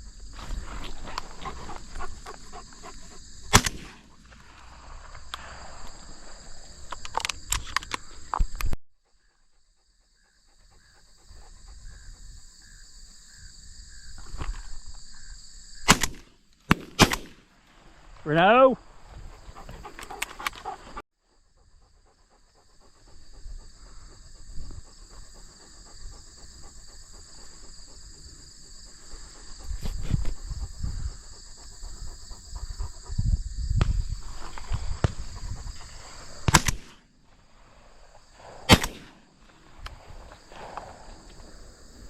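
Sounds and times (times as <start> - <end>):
insects droning: 0.0 - 42.0
sharp crack: 3.5 - 5.9, 15.9 - 17.6, 36.4 - 37.1, 38.4 - 41.5
low rumbling handling or wind noise: 29.6 - 36.9.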